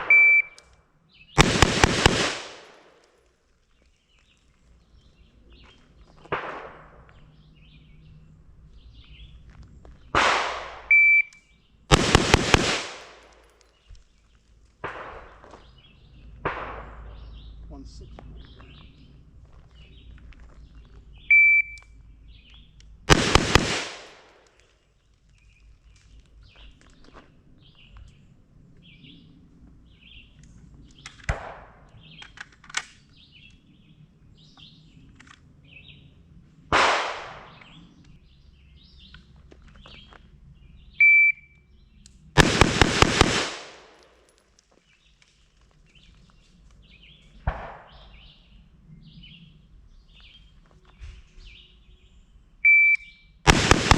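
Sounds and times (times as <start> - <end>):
shot timer beep: 0.0 - 0.6, 41.0 - 41.5
gunshots: 1.4 - 3.1, 6.3 - 7.0, 10.1 - 11.0, 11.9 - 13.5, 14.8 - 15.5, 16.4 - 17.2, 23.1 - 24.4, 36.7 - 37.6, 42.4 - 44.3, 47.4 - 48.2, 53.5 - 53.9.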